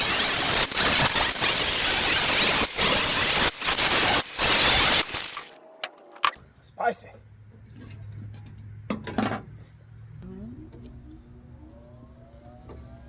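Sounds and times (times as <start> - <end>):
welder crackling hiss: 0.0 - 5.6.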